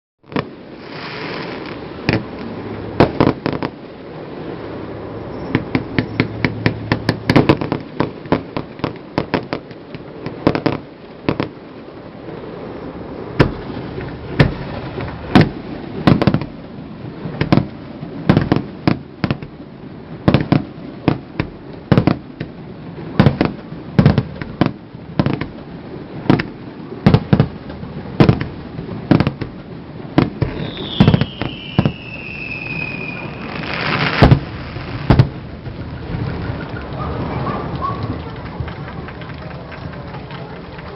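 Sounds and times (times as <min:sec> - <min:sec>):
fireworks bangs: 0:00.2 - 0:40.9
falling firework whistle: 0:05.2 - 0:06.4, 0:30.4 - 0:35.3.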